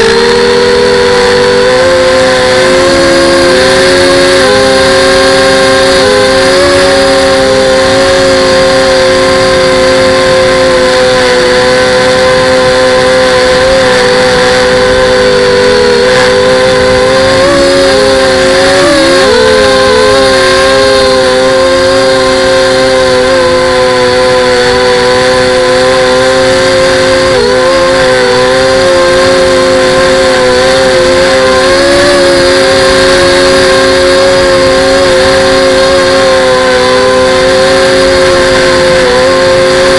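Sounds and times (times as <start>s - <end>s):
drone propellers whining: 0.0s - 39.9s.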